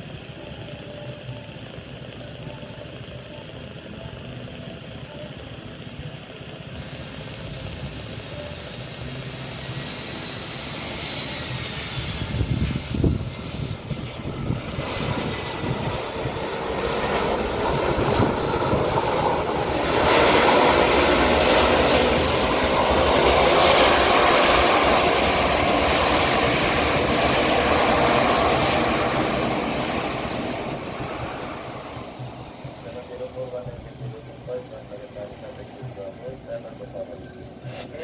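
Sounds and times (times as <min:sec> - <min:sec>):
jet airliner engines: 0:00.0 - 0:38.0
wind buffeting microphone: 0:11.9 - 0:20.3.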